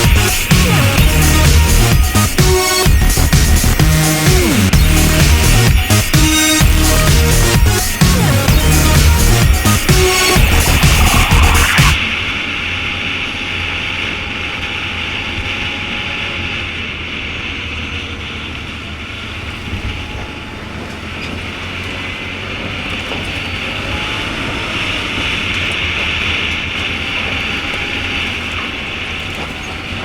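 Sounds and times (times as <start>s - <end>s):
electronic music: 0.0s - 12.4s
rattling rushing noise: 0.0s - 30.0s
vehicle rumble: 0.0s - 30.0s.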